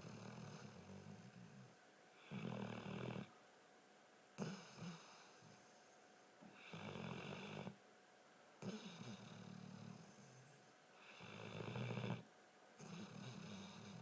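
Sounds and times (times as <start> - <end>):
dog snorting: 0.0 - 3.3, 4.4 - 5.7, 8.6 - 12.2, 12.8 - 14.0
dog snoring: 0.0 - 3.4, 4.4 - 7.8, 8.6 - 14.0.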